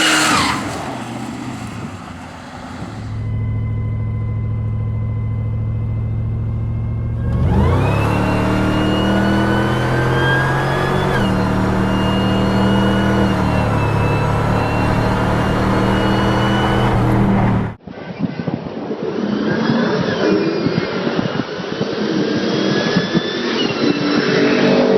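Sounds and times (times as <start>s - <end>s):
car engine accelerating hard: 0.0s - 17.8s
supercharger whine: 0.0s - 17.8s, 18.8s - 24.9s.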